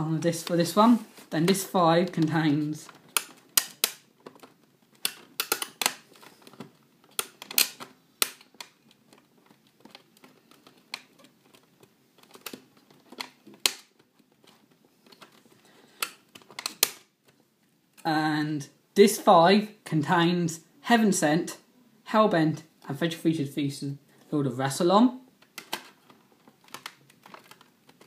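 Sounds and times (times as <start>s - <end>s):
plastic disc packaging clicking: 1.4s - 17.4s, 25.4s - 28.0s
sharp plastic snaps: 1.5s - 18.1s, 25.4s - 28.0s.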